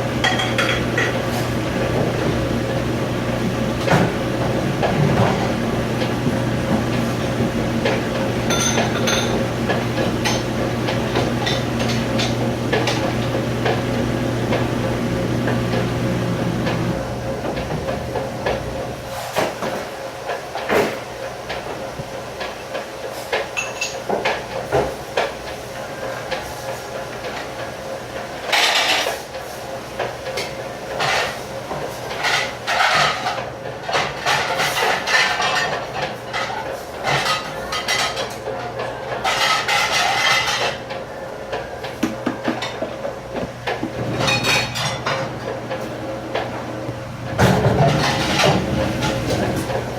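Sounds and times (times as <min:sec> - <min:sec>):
machine hum: 0:00.0 - 0:19.2, 0:41.0 - 0:49.9
dishes and cutlery clattering: 0:00.2 - 0:01.2, 0:08.5 - 0:09.4, 0:44.2 - 0:45.3
dishes and pans clattering: 0:00.2 - 0:01.2, 0:08.5 - 0:09.5, 0:10.2 - 0:10.5, 0:23.3 - 0:25.3, 0:28.5 - 0:29.2, 0:32.1 - 0:38.4, 0:39.2 - 0:43.0, 0:43.7 - 0:46.5, 0:47.4 - 0:49.7.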